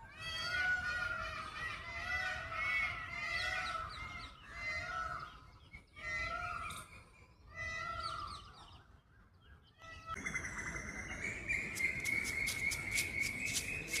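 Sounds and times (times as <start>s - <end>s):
peafowl call: 0.2s - 8.7s
rapid sharp ticks: 11.8s - 14.0s.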